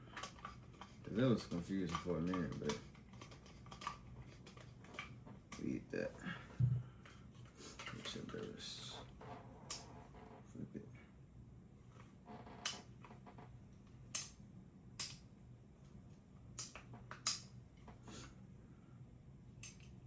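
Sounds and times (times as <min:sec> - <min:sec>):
sharp metal clicks and taps: 0:14.1 - 0:14.4, 0:15.0 - 0:15.3, 0:16.6 - 0:17.5, 0:19.6 - 0:20.0.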